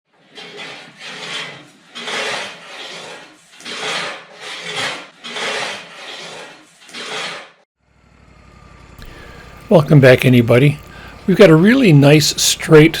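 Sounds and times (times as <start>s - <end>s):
hand saw cutting wood: 0.1s - 7.7s.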